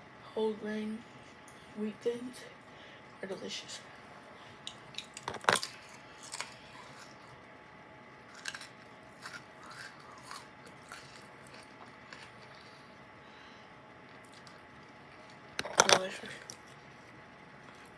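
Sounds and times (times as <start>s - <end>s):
crunchy cracker chewing: 4.7s - 7.4s, 8.2s - 13.0s, 14.0s - 16.8s.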